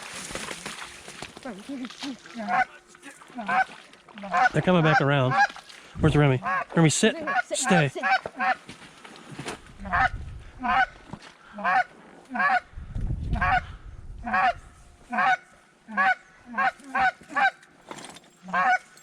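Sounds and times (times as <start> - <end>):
wind rumble on microphone: 5.9 - 6.3, 9.6 - 11.1, 12.6 - 15.0
duck call quacking: 7.2 - 8.6, 11.6 - 12.6, 14.3 - 15.4, 18.5 - 18.8.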